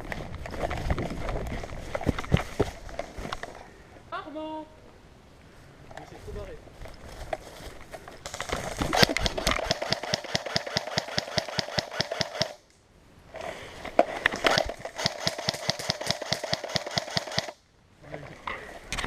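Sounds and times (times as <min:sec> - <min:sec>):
rapid gun shots rattling: 0:09.0 - 0:12.6, 0:14.5 - 0:17.6.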